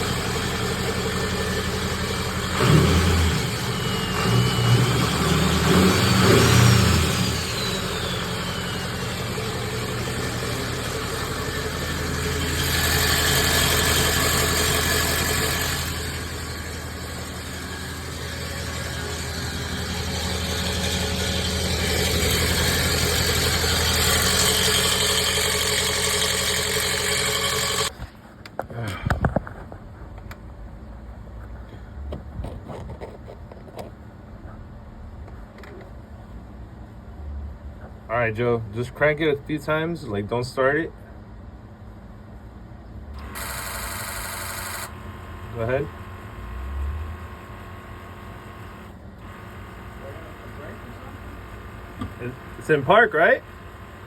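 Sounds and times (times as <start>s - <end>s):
diesel engine revving and idling: 0.0s - 27.9s, 43.2s - 54.0s
starter grinding rattle: 3.4s - 27.9s, 43.2s - 54.0s.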